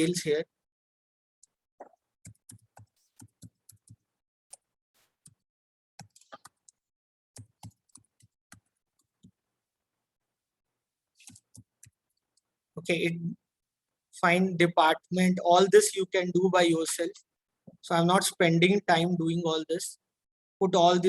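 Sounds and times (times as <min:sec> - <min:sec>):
computer keyboard typing: 0:01.4 - 0:05.4, 0:06.0 - 0:06.8, 0:07.4 - 0:09.4.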